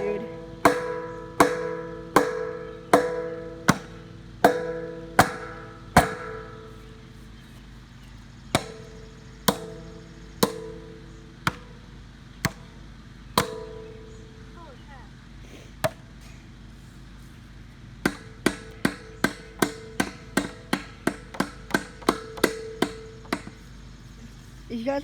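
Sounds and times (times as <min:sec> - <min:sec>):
sledgehammer ringing on steel tank: 0:00.0 - 0:07.0, 0:08.5 - 0:11.8, 0:13.4 - 0:14.5, 0:18.0 - 0:23.6.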